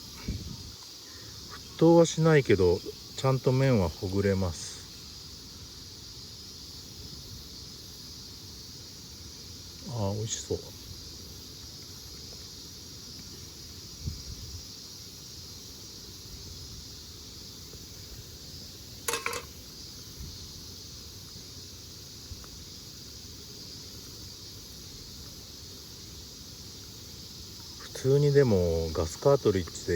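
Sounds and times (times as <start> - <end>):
insects droning: 0.0 - 29.9
sharp clink: 19.1 - 19.5.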